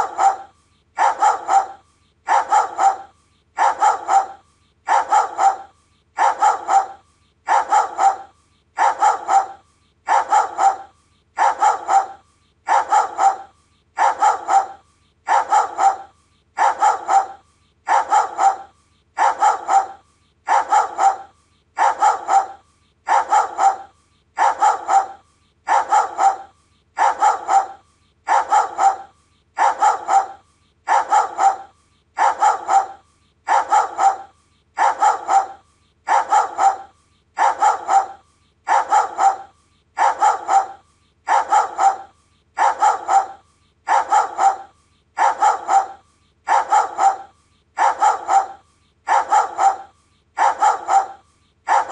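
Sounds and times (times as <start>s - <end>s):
dog barking: 0.0s - 51.9s.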